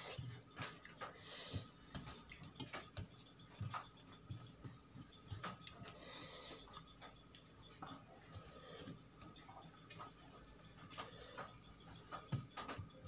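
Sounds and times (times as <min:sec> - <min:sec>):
chewing with wet mouth clicks: 0:02.1 - 0:02.5, 0:06.7 - 0:07.6.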